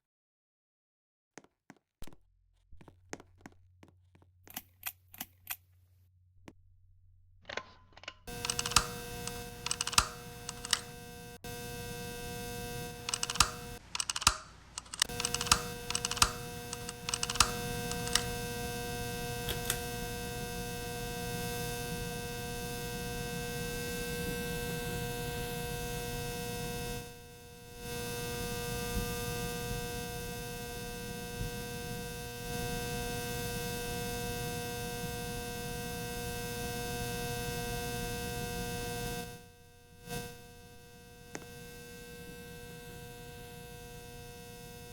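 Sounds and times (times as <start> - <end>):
irregular clicks: 7.5 - 11.0, 13.0 - 18.3
ceiling fan humming: 8.3 - 22.1.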